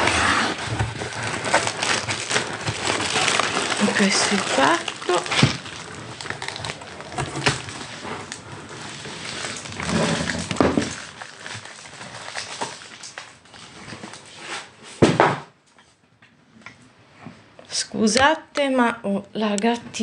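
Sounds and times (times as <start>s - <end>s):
objects clattering: 0.0s - 13.2s
packaging rustling: 0.0s - 14.8s.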